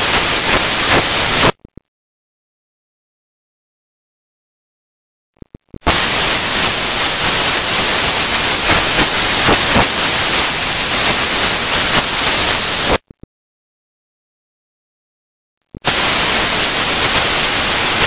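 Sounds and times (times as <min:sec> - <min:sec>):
loud static hiss: 0:00.0 - 0:01.8, 0:05.4 - 0:13.2, 0:15.8 - 0:18.0
faint clicks: 0:05.4 - 0:05.9.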